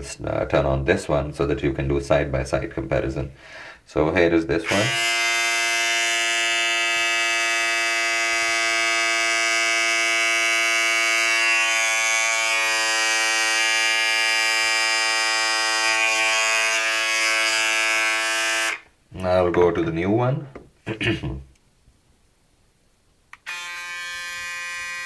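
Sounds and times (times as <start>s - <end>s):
electric shaver buzzing: 4.6s - 18.8s, 23.4s - 25.0s.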